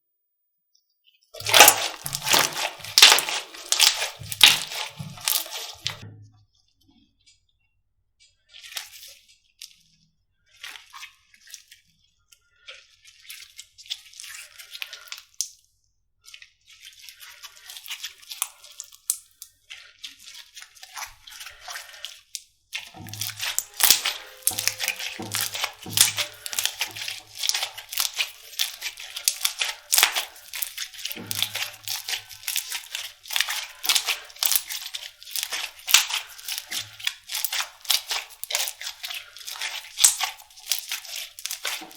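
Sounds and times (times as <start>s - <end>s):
slime crackling and popping: 1.4s - 6.0s, 22.8s - 41.9s.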